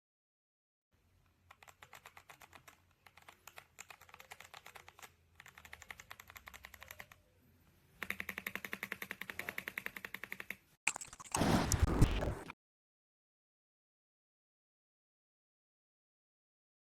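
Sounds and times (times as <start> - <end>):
mechanical keyboard typing: 1.5 - 7.2, 8.0 - 12.2.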